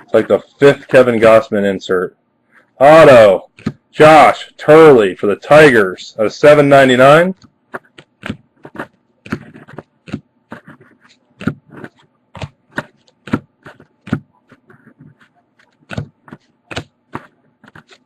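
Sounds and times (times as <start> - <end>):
trading cards clicking and scraping: 3.5 - 3.8, 7.4 - 18.0.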